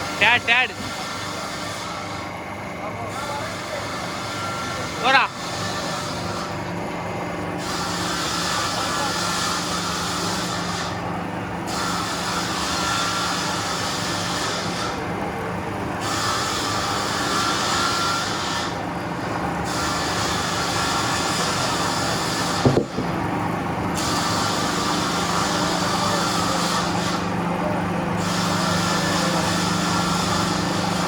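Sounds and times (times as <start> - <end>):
lathe motor hum: 0.0 - 31.0
sharp knock: 22.6 - 23.2.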